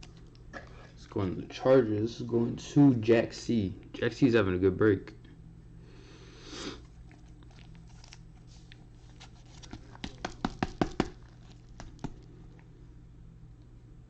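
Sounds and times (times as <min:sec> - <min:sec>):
soft rustle of card packs: 0:06.8 - 0:12.4.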